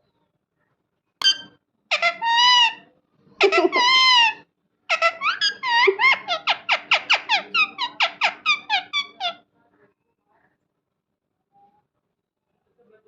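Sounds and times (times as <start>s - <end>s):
parrot squawking and chirping: 1.2s - 2.8s, 3.4s - 9.4s.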